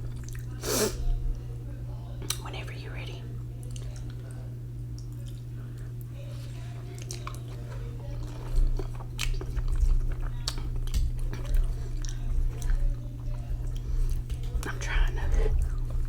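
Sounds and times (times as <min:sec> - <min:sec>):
person chewing noodles: 0:00.0 - 0:01.0, 0:04.9 - 0:16.0
steady low hum: 0:00.0 - 0:16.0.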